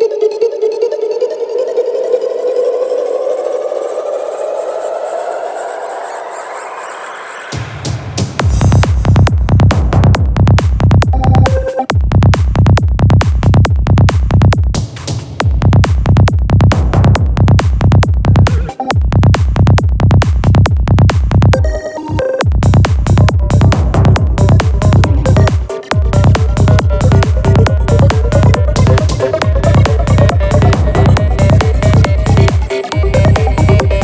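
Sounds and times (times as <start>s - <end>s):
electronic kick-drum beat: 7.5s - 34.0s
synth tones: 11.1s - 11.9s, 18.3s - 19.1s, 21.6s - 34.0s.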